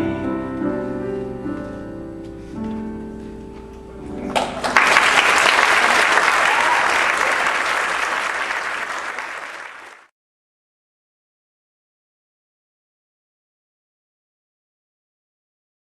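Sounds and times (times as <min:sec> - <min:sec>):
audience applause: 0:04.2 - 0:10.1.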